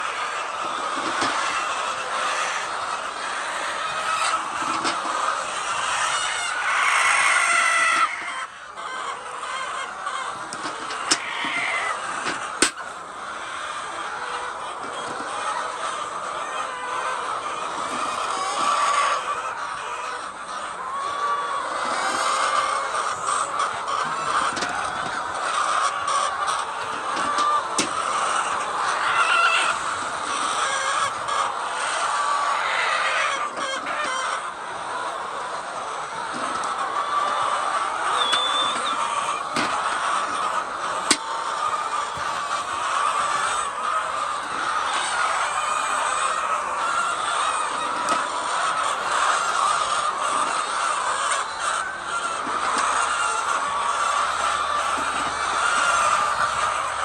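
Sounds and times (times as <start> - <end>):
hens clucking: 0.0 - 57.0.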